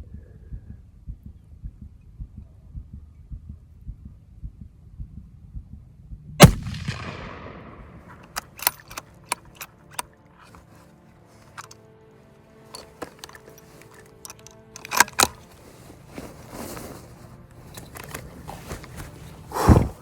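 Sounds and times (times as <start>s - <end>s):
heartbeat-like thumps: 0.5s - 6.4s, 19.5s - 20.0s
rifle shot with echo: 6.4s - 8.3s
rifle bolt clicks and clacks: 7.9s - 10.7s, 11.5s - 11.8s, 12.7s - 15.6s.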